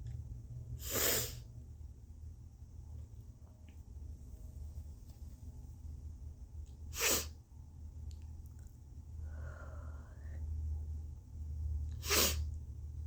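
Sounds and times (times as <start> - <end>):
steady low hum: 0.0 - 13.0
faint rising breath: 9.2 - 10.6.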